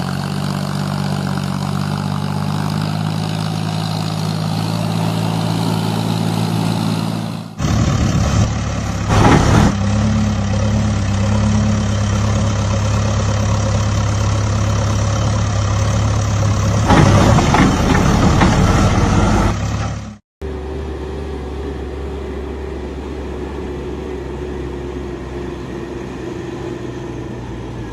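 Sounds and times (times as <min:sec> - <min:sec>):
engine noisy surges: 0:00.0 - 0:27.9.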